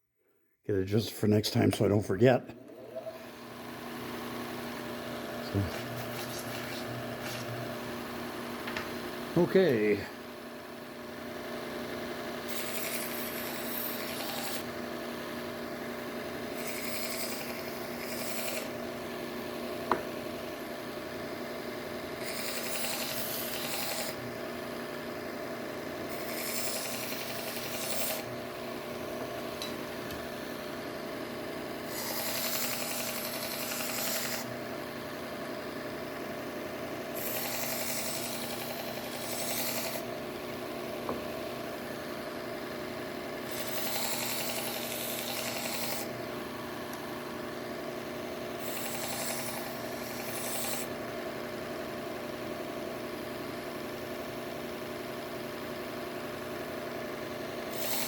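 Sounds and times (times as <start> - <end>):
belt grinder running: 4.1 - 7.7, 12.4 - 14.7, 16.5 - 18.9, 22.1 - 24.2, 26.0 - 28.3, 31.3 - 34.6, 37.1 - 40.2, 43.4 - 46.2, 48.6 - 51.0, 57.7 - 58.0.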